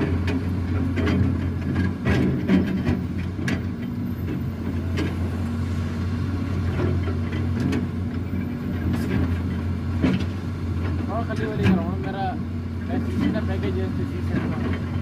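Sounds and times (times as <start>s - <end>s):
sharp knocks and clicks: 0.0s - 5.2s, 6.7s - 11.9s
large engine humming: 0.0s - 15.0s.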